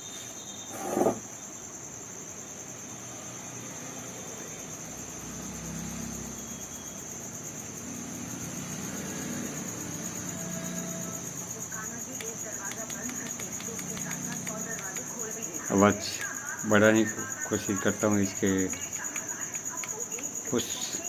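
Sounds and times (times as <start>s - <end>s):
cricket chirping trill: 0.0s - 21.0s.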